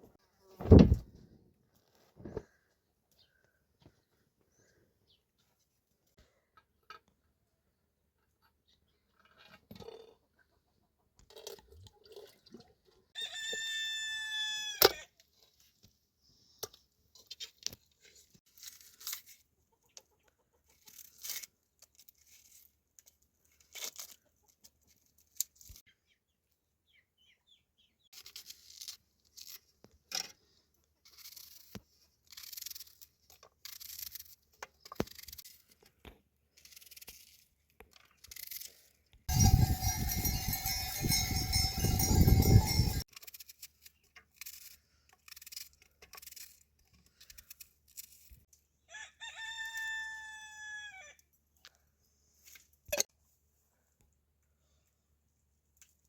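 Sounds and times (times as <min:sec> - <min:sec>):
rooster crowing: 0:13.2 - 0:15.0, 0:48.9 - 0:51.1.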